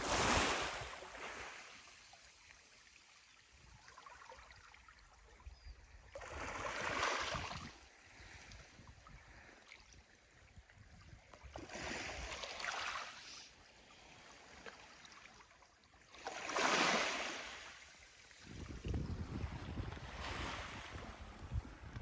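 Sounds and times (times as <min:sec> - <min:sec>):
sea waves washing on shore: 0:00.0 - 0:02.0.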